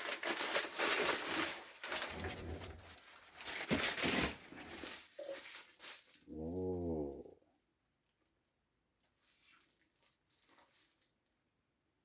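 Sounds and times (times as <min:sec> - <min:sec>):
packing material crinkling: 0:00.0 - 0:06.3.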